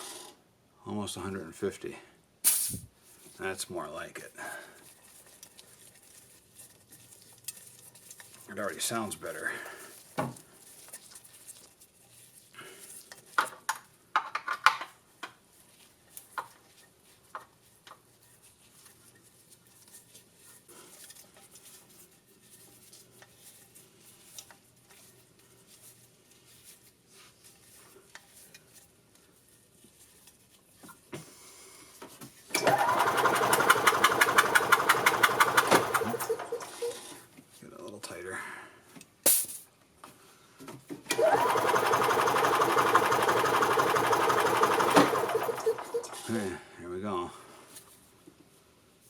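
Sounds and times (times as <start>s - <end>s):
engine cranking by starter: 32.5s - 37.0s, 41.1s - 46.3s.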